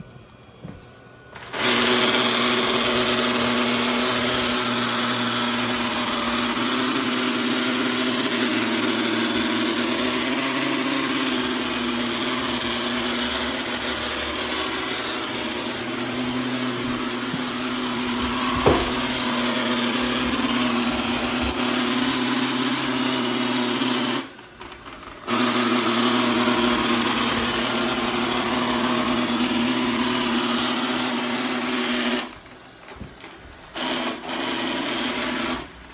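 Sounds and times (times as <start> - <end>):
robot vacuum grinding: 1.4 - 32.4
sharp knock: 18.5 - 19.2.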